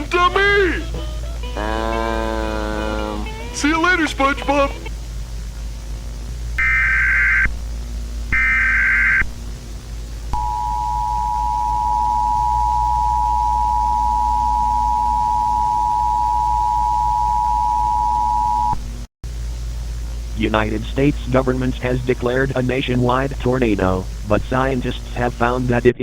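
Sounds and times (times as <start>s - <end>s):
warbling data bursts: 0.0s - 18.8s, 19.7s - 26.0s
steady low hum: 0.0s - 26.0s
two-tone attention signal: 10.4s - 18.8s.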